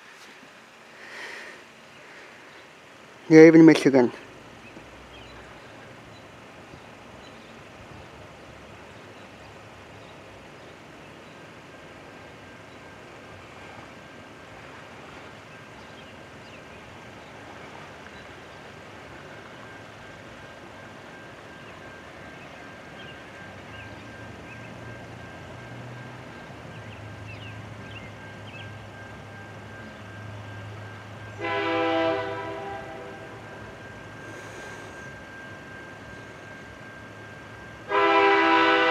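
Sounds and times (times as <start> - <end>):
diesel locomotive rumble: 0.0 - 38.9
train air horn blast: 31.4 - 35.1, 37.9 - 38.9.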